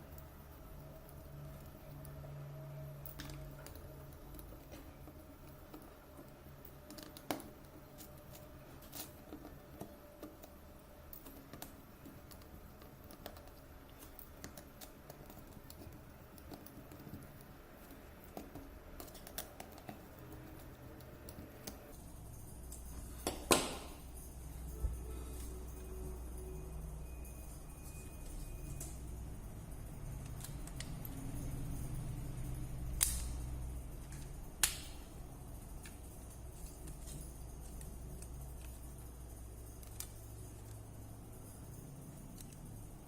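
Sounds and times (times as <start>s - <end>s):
small parts and tools clicking: 0.0s - 43.0s.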